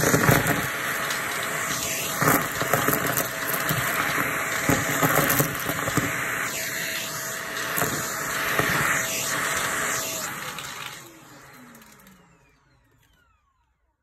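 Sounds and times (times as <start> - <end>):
debris rattling in vacuum: 0.0 - 6.6
vacuum cleaner running: 0.0 - 14.0.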